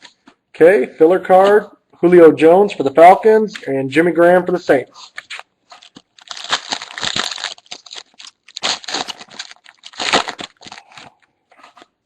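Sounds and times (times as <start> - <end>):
foil wrapper crinkling: 5.0 - 11.9.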